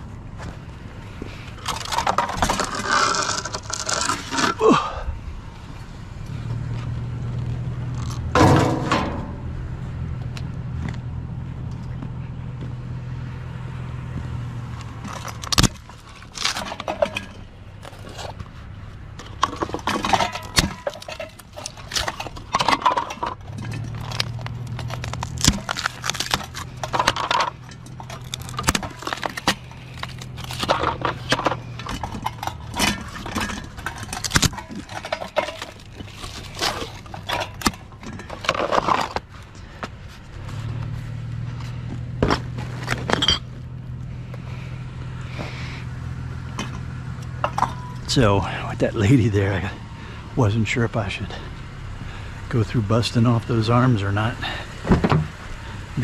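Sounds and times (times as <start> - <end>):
vehicle engine humming: 0.0 - 56.0
scrap clattering and rattling: 0.4 - 5.0, 5.7 - 11.0, 14.0 - 56.0.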